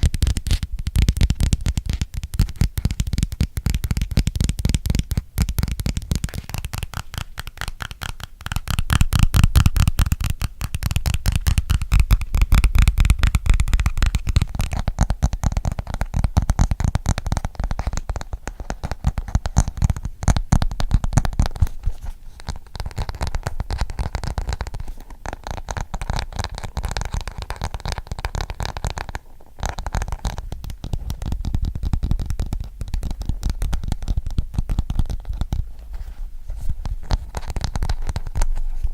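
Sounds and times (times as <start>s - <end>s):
fingernail tapping on microphone: 0.0s - 38.9s.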